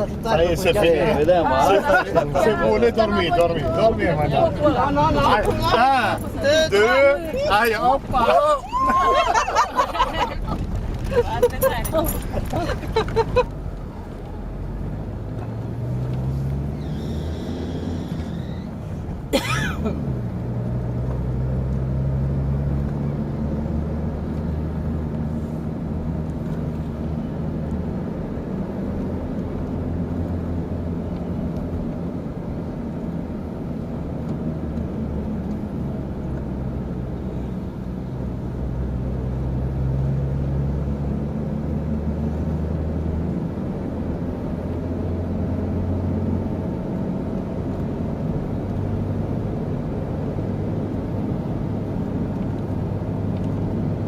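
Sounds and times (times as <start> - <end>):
tyre and wind noise: 6.3 - 14.4
vehicle engine revving: 10.4 - 32.0.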